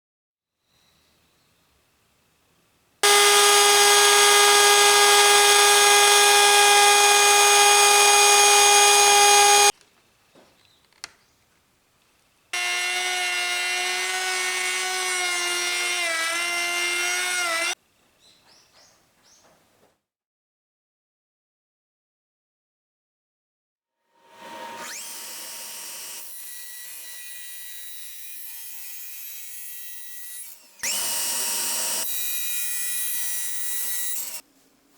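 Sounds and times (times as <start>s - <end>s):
electric power tool motor whine: 3.0s - 9.7s, 12.6s - 17.8s, 24.4s - 28.6s, 30.2s - 34.4s.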